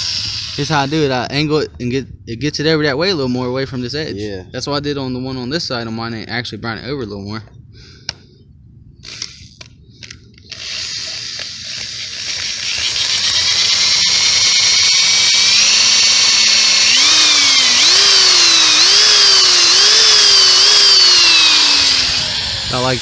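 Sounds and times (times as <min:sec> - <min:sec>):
electric drill boring metal: 0:00.0 - 0:01.1, 0:10.5 - 0:23.0.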